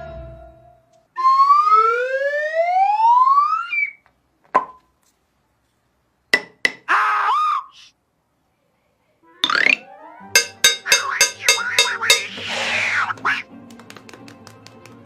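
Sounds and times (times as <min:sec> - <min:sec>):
sharp tap with ring: 0:10.4 - 0:12.4.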